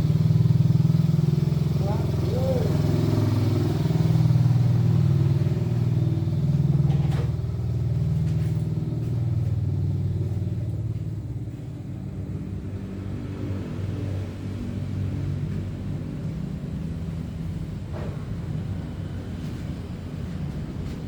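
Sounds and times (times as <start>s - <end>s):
scooter engine sputtering: 0.0s - 9.8s.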